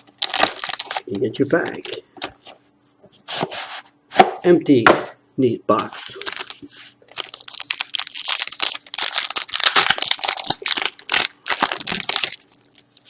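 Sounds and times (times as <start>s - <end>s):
plastic wrapper crinkling and tearing: 0.0s - 2.0s, 6.0s - 13.0s.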